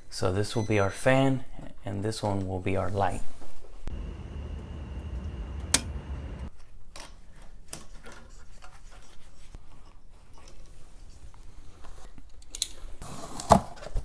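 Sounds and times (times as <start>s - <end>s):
steady low rumble: 3.9s - 6.5s.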